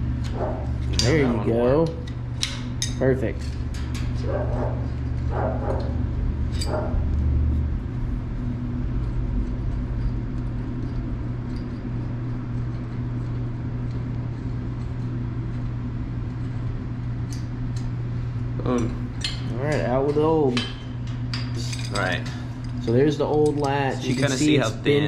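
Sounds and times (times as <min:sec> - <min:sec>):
steady low hum: 0:00.0 - 0:25.0
dog barking: 0:00.3 - 0:00.7, 0:04.2 - 0:06.0, 0:06.6 - 0:07.1.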